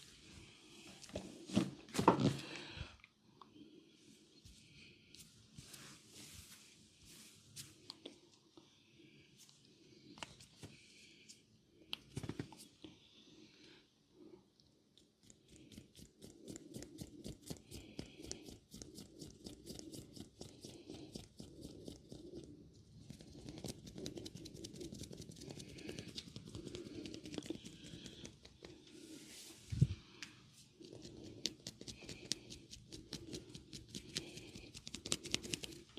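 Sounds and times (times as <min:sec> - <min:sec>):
oiled hands rubbing skin: 0:05.1 - 0:08.0, 0:23.0 - 0:30.0, 0:30.8 - 0:35.9.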